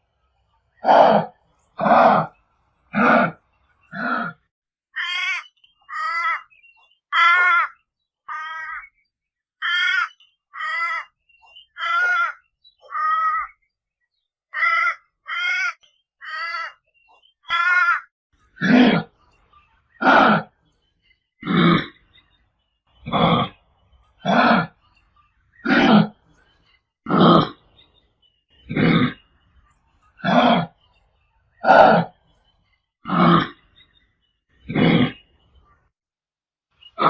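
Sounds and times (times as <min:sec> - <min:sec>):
kangaroo low grunts: 0:00.8 - 0:04.4, 0:18.6 - 0:19.1, 0:20.0 - 0:20.5, 0:21.4 - 0:21.9, 0:23.0 - 0:23.6, 0:24.2 - 0:24.8, 0:25.6 - 0:26.2, 0:27.1 - 0:27.6, 0:28.7 - 0:29.2, 0:30.2 - 0:30.7, 0:31.6 - 0:32.1, 0:33.1 - 0:33.6, 0:34.7 - 0:35.2.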